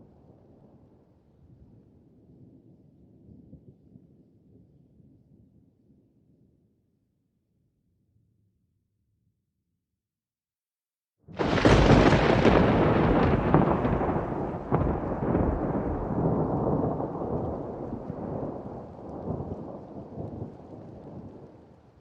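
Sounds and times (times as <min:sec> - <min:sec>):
thunder crack and rumble: 0:11.4 - 0:21.9.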